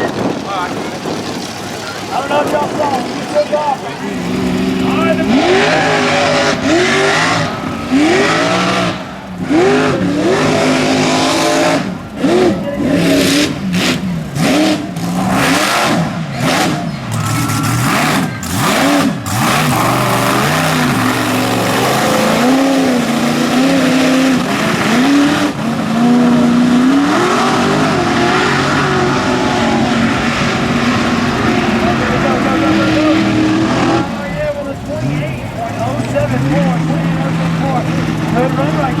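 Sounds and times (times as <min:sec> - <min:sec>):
truck engine revving: 0:00.0 - 0:39.0.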